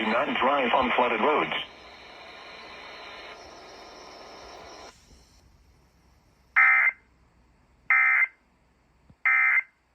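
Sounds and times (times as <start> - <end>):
broadcast hiss: 0.0 - 7.8.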